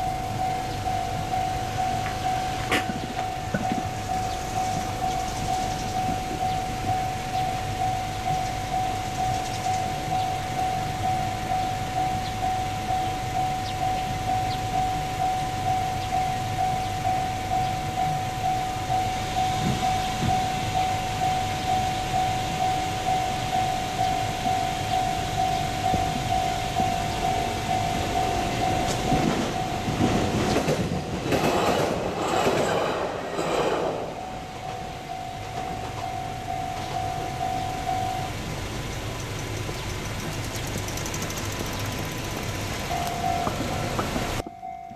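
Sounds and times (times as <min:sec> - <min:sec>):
level crossing bell ringing: 0:00.0 - 0:30.4, 0:33.4 - 0:38.5, 0:42.8 - 0:44.9
train wheels clacking over rail joints: 0:02.0 - 0:06.6, 0:28.0 - 0:37.7, 0:39.2 - 0:44.4.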